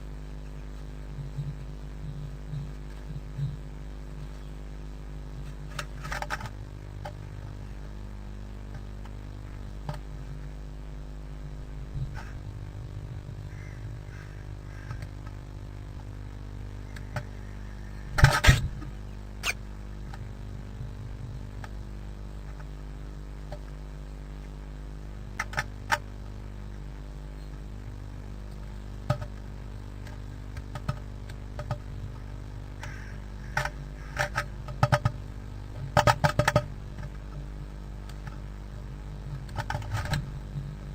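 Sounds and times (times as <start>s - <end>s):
steady low hum: 0.0s - 40.9s
beak pecking on wood: 13.5s - 15.1s, 32.8s - 35.2s.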